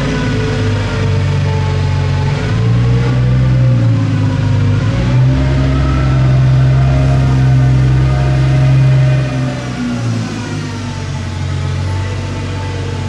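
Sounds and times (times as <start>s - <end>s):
lathe spindle whine: 0.0s - 13.0s
low machine hum: 0.0s - 13.0s.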